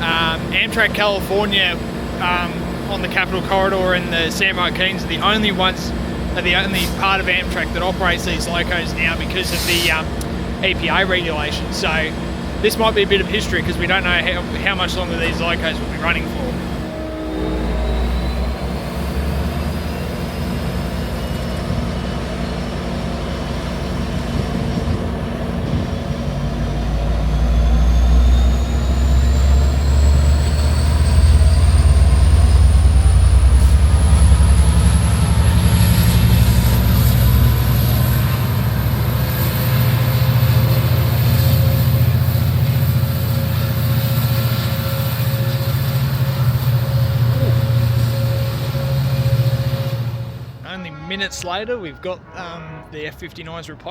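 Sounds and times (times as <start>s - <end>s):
diesel locomotive engine rumbling: 0.0s - 53.9s
thin whine rising in pitch: 15.0s - 21.4s, 25.6s - 38.8s.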